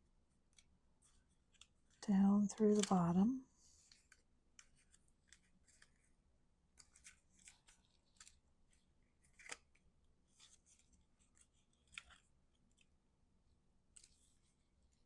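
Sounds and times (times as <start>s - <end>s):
cardstock rustling: 2.6s - 3.0s
sharp paper click: 2.6s - 3.0s, 6.8s - 9.8s.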